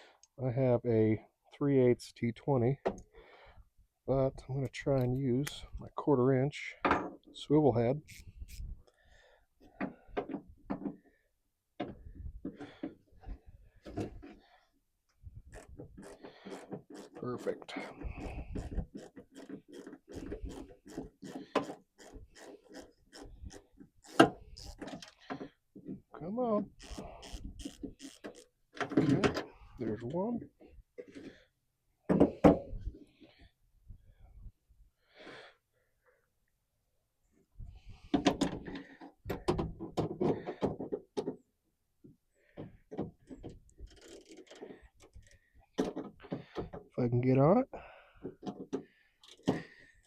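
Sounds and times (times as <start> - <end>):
ratchet metallic clicks: 26.8 - 28.5.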